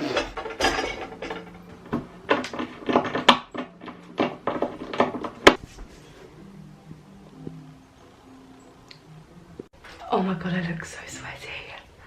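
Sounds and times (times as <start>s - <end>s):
furniture parts clicking and knocking: 0.0s - 5.6s.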